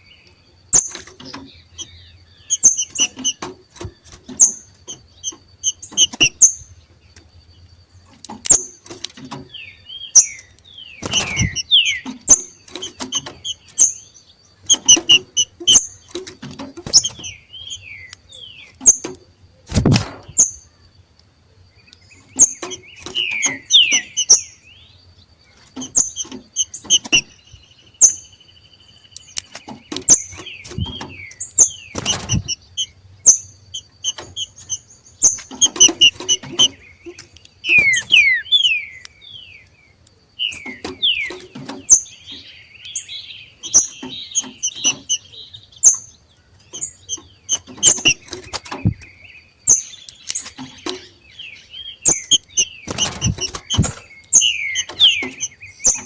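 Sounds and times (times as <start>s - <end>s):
bird chirps and calls: 0.0s - 20.9s, 21.8s - 56.0s
sharp bird clicks: 0.2s - 24.5s, 25.6s - 56.0s
bird warble: 0.7s - 6.7s, 10.2s - 14.0s, 14.6s - 18.0s, 18.7s - 20.6s, 22.2s - 24.5s, 25.5s - 27.5s, 29.4s - 38.9s, 43.6s - 45.3s, 46.6s - 49.1s, 52.0s - 56.0s.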